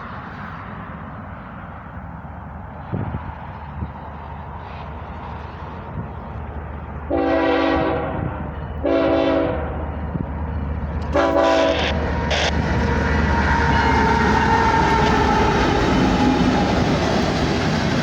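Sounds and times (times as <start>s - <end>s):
train rumble: 0.0s - 18.0s
train air horn blasts: 7.1s - 9.9s, 11.1s - 12.6s.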